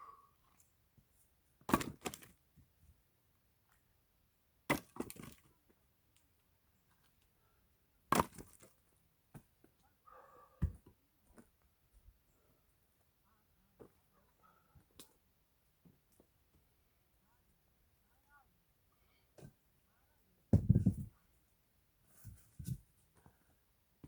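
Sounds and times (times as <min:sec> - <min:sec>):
axe splitting firewood: 0:01.7 - 0:02.3, 0:04.7 - 0:05.4, 0:08.1 - 0:08.7
dull knock: 0:20.5 - 0:21.1.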